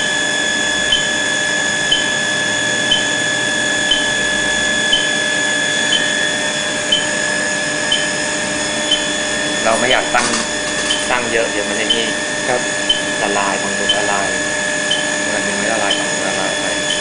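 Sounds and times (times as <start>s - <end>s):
electrical whine: 0.0s - 17.0s
short beeps: 8.8s - 17.0s.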